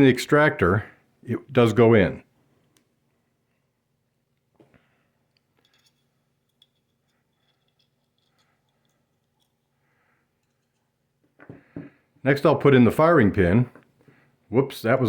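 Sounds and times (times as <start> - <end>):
metal rifle parts clicking: 5.3 - 9.7.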